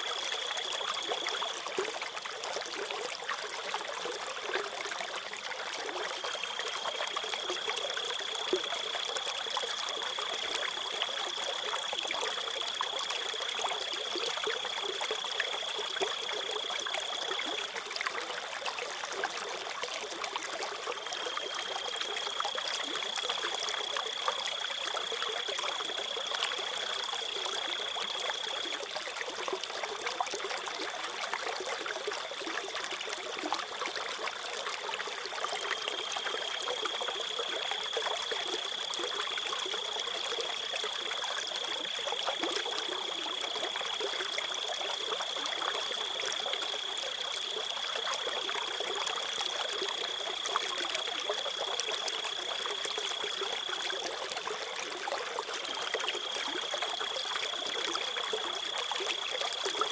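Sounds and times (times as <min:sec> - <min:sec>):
stream trickling: 0:00.0 - 0:59.9
crickets trilling: 0:35.8 - 0:54.1, 0:55.7 - 0:59.9.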